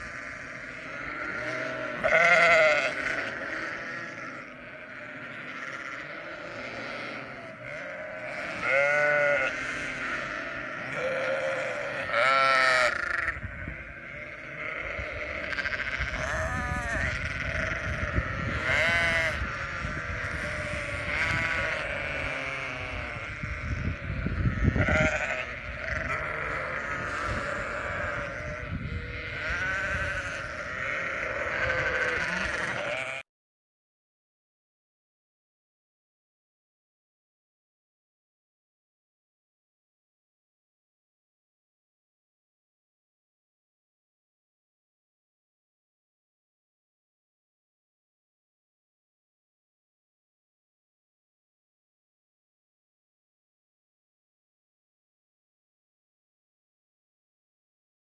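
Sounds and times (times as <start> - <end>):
sheep bleating: 0.0 - 33.3.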